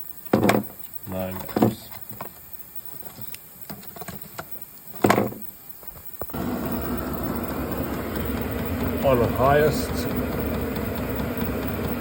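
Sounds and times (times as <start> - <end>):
faint whine: 0.0 - 12.0
heater blower and burner running: 6.3 - 12.0.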